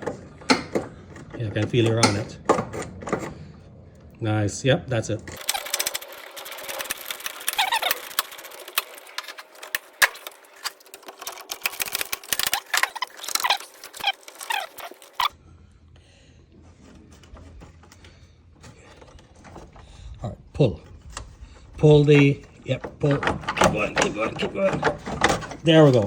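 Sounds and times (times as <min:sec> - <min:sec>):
short squeaks: 0:05.4 - 0:10.8, 0:11.8 - 0:15.3.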